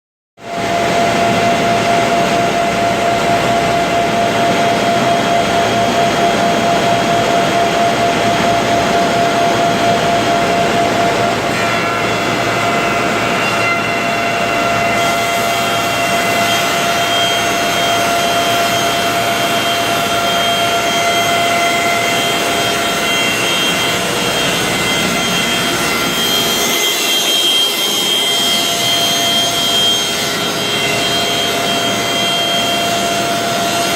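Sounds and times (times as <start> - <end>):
machine whine: 0.4 - 33.9
machine mechanical whir: 0.5 - 33.9.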